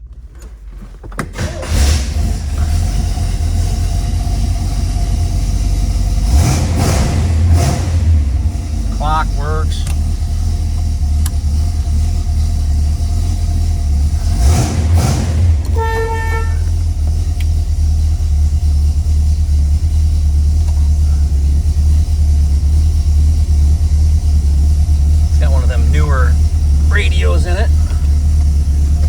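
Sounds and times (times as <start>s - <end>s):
car engine idling: 0.0s - 29.0s
car horn toot: 15.6s - 16.8s.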